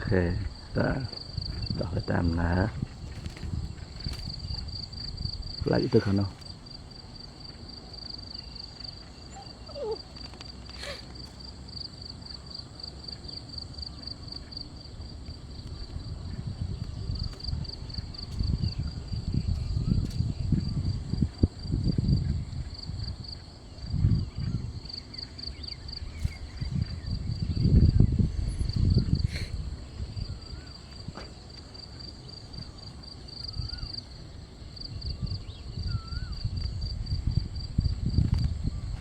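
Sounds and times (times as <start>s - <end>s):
low rumbling bumps: 0.0s - 7.8s, 14.5s - 24.6s
insects chirping: 0.0s - 39.0s.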